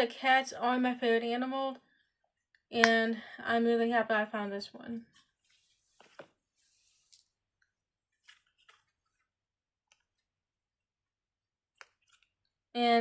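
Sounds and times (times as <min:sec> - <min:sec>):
soft rustle: 0:05.0 - 0:07.4.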